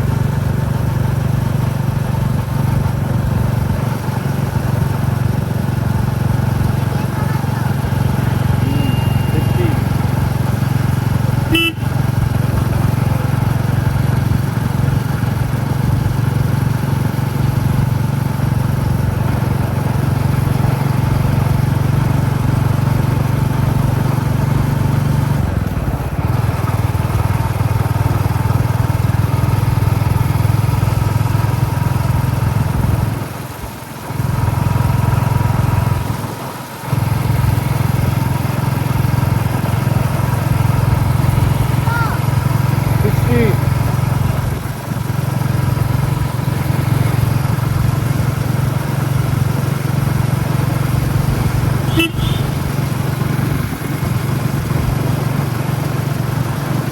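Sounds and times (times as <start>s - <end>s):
motorcycle engine running: 0.0s - 56.9s.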